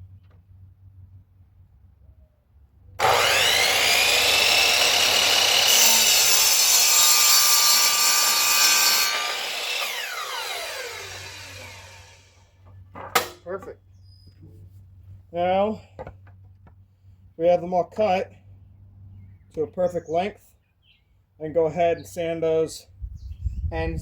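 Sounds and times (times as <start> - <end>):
saw blade cutting wood: 3.0 - 12.4
electric saw whining: 3.0 - 12.5.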